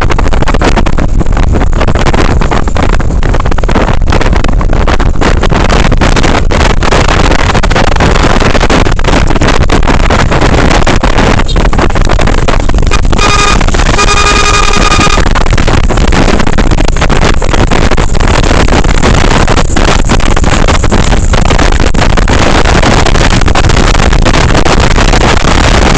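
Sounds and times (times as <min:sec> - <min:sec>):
vehicle engine noise: 0:00.0 - 0:25.9
wind buffeting microphone: 0:00.0 - 0:25.9
wind rush: 0:00.0 - 0:25.9
horn blasts: 0:12.9 - 0:15.3.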